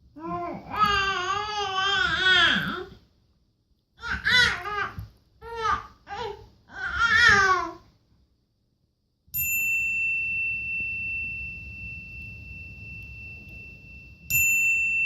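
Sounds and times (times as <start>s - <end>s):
high clear bell ding: 9.3s - 15.0s.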